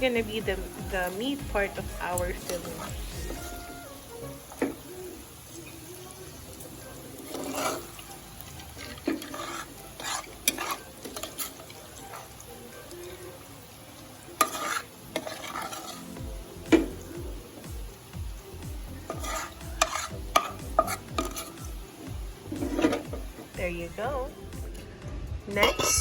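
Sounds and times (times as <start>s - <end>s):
utensil scraping a frying pan: 0.0s - 3.8s, 7.1s - 13.4s, 14.3s - 17.8s, 19.0s - 23.6s, 25.6s - 26.0s
faint sizzle of hot oil: 0.0s - 24.8s.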